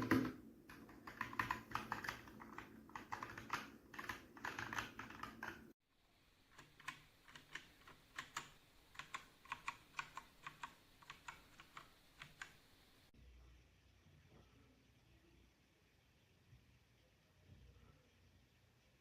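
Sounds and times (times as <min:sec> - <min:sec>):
mechanical keyboard clicking: 0:00.0 - 0:05.6, 0:06.6 - 0:12.6.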